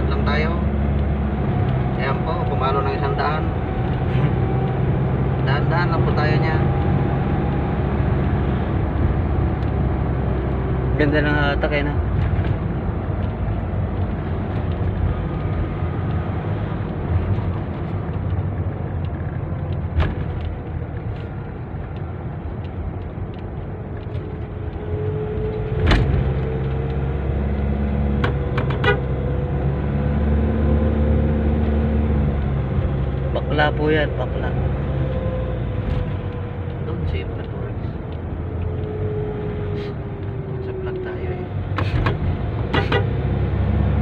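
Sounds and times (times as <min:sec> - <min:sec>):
van engine and road rumble: 0:00.0 - 0:44.0.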